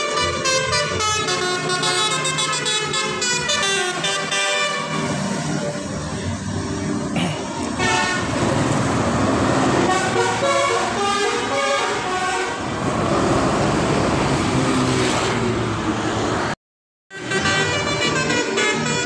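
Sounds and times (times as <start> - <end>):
multi-tone musical bus horn: 0.0 - 6.4, 7.0 - 8.6, 9.7 - 12.8, 17.1 - 19.0
bus engine: 0.0 - 19.0
traffic noise: 0.0 - 19.0.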